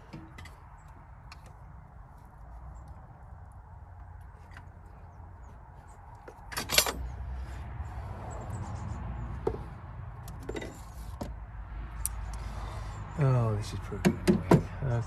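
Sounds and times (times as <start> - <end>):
metal tools clinking and rattling: 6.2 - 7.2, 10.3 - 11.2.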